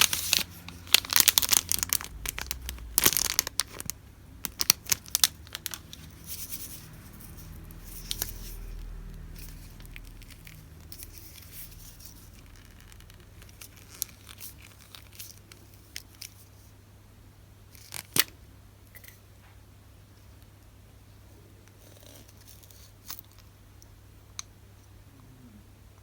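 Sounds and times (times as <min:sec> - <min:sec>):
paper rustling and crinkling: 0:00.0 - 0:08.7, 0:09.4 - 0:16.5.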